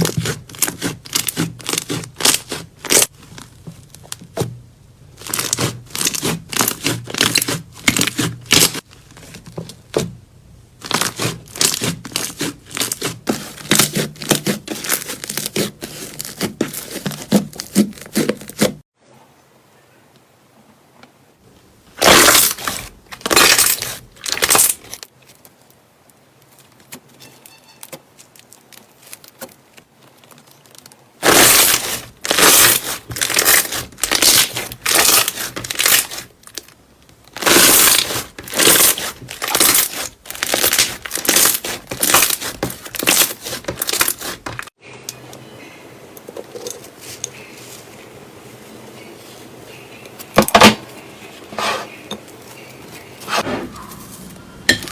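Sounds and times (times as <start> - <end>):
slime crackling and tearing: 0.0 - 4.2, 5.2 - 9.1, 10.8 - 18.7, 22.0 - 25.4, 28.2 - 44.7.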